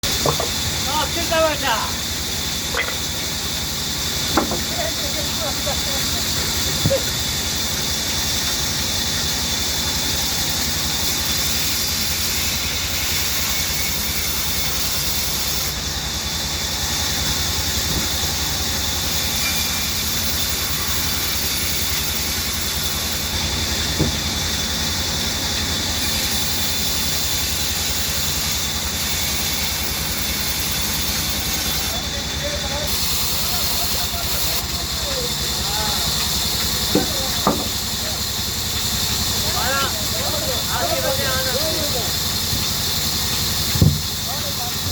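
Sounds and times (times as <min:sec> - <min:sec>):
band saw running: 0:00.0 - 0:44.9
short knock: 0:37.0 - 0:37.8, 0:43.8 - 0:44.1.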